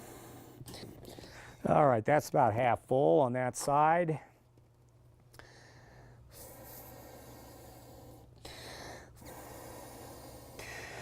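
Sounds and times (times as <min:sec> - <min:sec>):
person breathing in: 0:00.0 - 0:01.6, 0:05.4 - 0:11.0.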